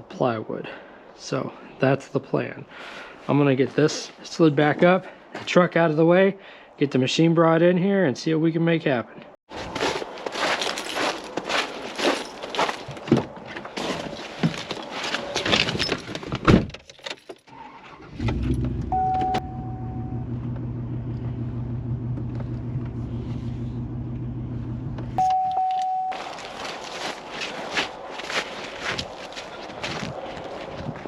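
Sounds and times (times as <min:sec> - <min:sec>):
truck engine starting and idling: 0:17.5 - 0:25.6
dashboard chime: 0:18.9 - 0:20.2, 0:25.2 - 0:26.4.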